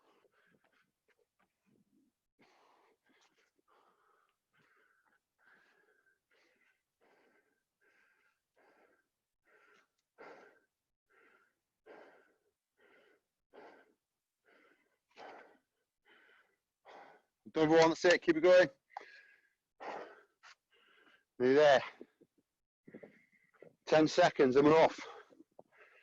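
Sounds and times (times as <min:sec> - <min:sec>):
fast heavy breathing with whistle: 0:02.4 - 0:17.4.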